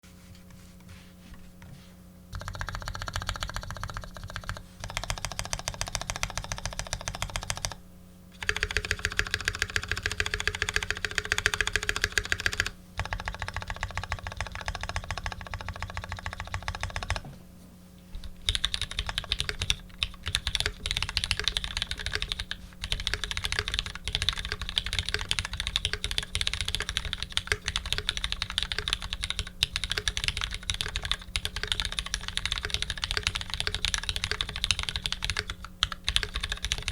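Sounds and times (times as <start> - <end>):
mechanical keyboard typing: 2.3 - 7.8, 8.4 - 17.2, 18.4 - 36.9.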